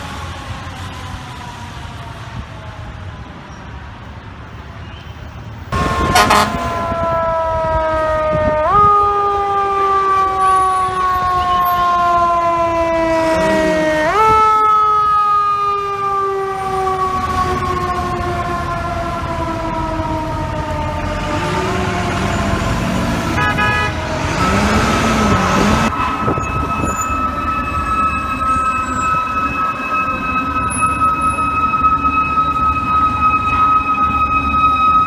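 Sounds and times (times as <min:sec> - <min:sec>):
fire truck siren: 0:00.0 - 0:35.0
loud horn blast: 0:05.7 - 0:09.1, 0:12.4 - 0:14.4, 0:21.0 - 0:35.0.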